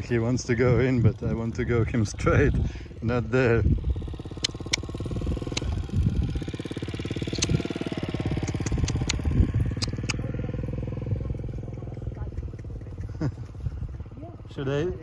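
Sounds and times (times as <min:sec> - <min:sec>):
vehicle engine running: 0:00.0 - 0:15.0
sharp clicks: 0:04.3 - 0:05.8, 0:07.2 - 0:07.7, 0:08.3 - 0:10.2.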